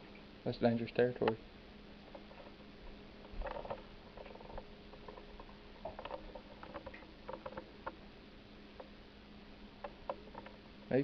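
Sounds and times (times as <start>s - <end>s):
steady low hum: 0.0s - 11.0s
small clicks and taps underwater: 3.2s - 8.0s, 8.8s - 9.0s, 9.8s - 10.6s.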